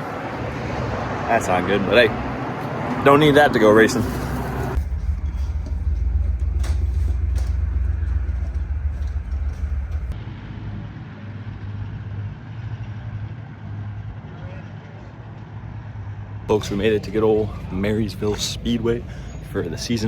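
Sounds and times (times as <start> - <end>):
vehicle engine and road noise: 0.0 - 20.0
steady low hum: 4.0 - 14.2.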